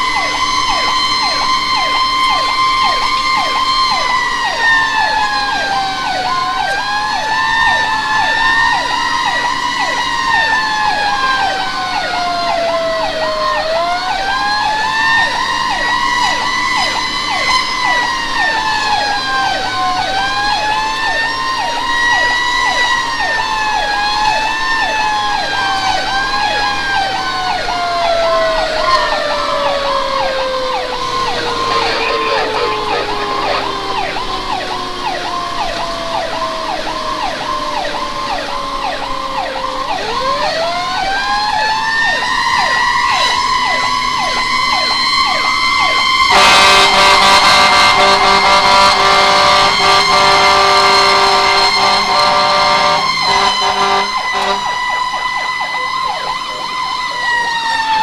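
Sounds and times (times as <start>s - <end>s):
wailing siren: 0.0s - 58.0s
yelp siren: 0.0s - 58.0s
truck engine running: 42.3s - 57.7s.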